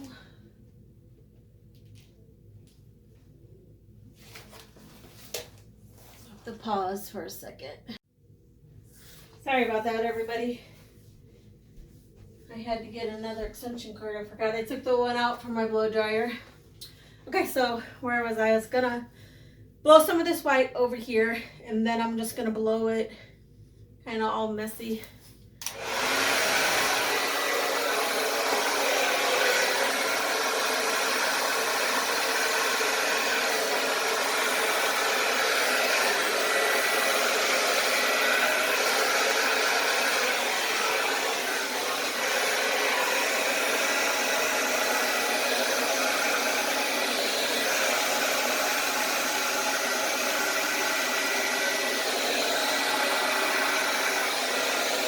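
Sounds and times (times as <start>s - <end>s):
hair dryer running: 0.0s - 0.2s, 25.6s - 55.0s.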